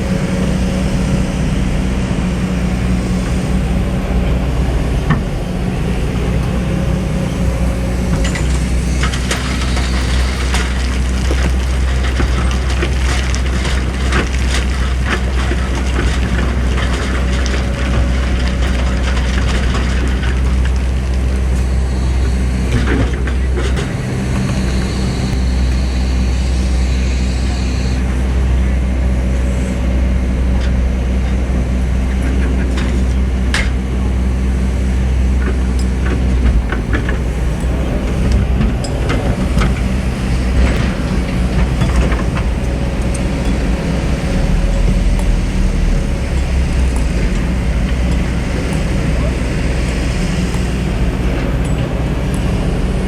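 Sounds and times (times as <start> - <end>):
excavator diesel engines droning: 0.0 - 53.0.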